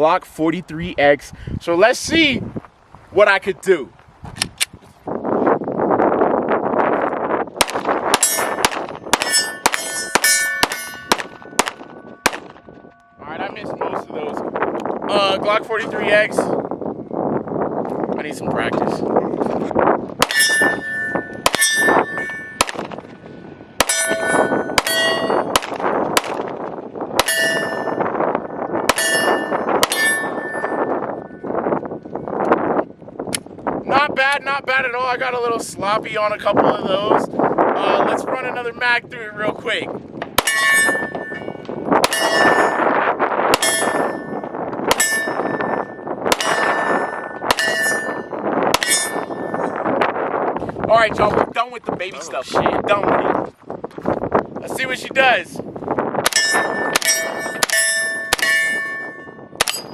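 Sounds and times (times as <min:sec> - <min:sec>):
pistol shots: 0:07.6 - 0:12.7, 0:21.4 - 0:23.0, 0:23.8 - 0:26.6, 0:56.2 - 0:59.0
steel target ringing: 0:07.6 - 0:14.0, 0:20.2 - 0:22.9, 0:23.8 - 0:25.8, 0:27.2 - 0:31.6, 0:40.4 - 0:49.9, 0:56.2 - 0:59.9.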